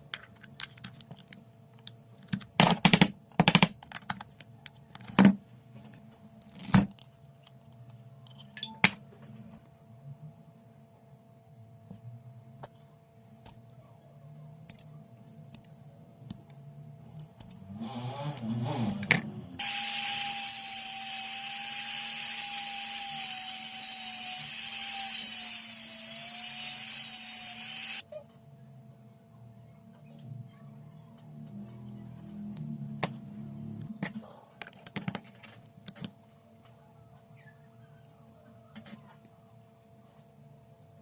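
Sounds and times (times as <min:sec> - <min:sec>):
small electric tool whining: 0:19.6 - 0:28.0.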